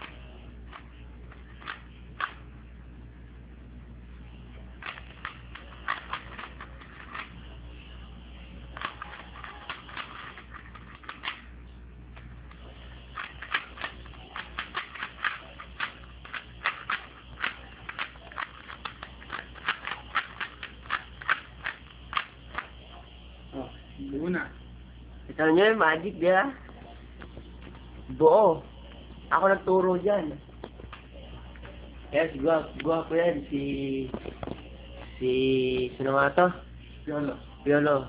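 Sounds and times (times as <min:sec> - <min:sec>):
puzzle cube clicking: 0:08.8 - 0:11.4, 0:12.5 - 0:22.7.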